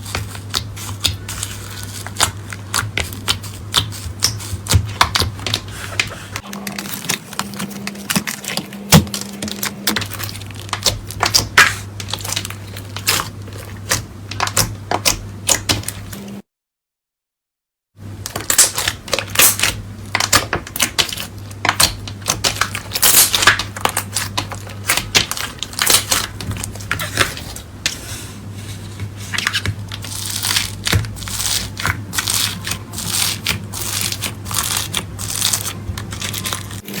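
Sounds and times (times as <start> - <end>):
slime squishing with crackling clicks: 6.5 - 16.0, 18.2 - 27.5, 29.4 - 36.9.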